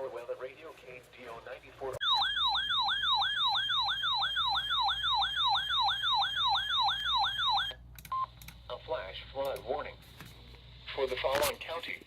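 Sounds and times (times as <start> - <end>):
electronic siren alarm tone: 2.0 - 7.8.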